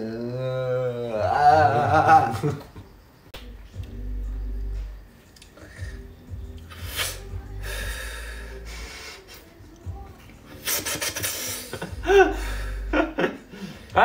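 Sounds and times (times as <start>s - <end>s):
background music with bass line: 3.4s - 9.1s, 9.7s - 14.0s.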